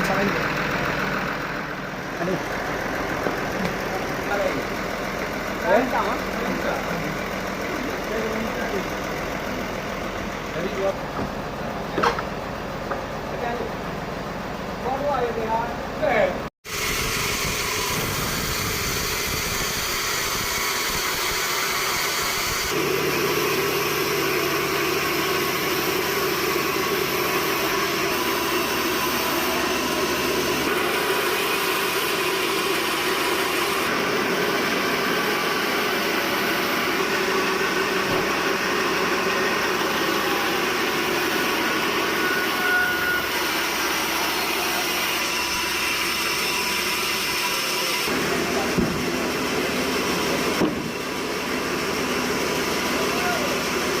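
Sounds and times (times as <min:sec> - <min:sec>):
machinery drone: 0:16.7 - 0:54.0.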